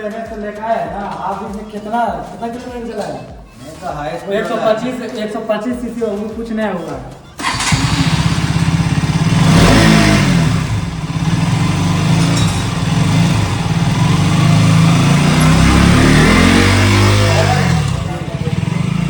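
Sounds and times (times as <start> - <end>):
motorcycle engine revving: 7.4 - 19.0.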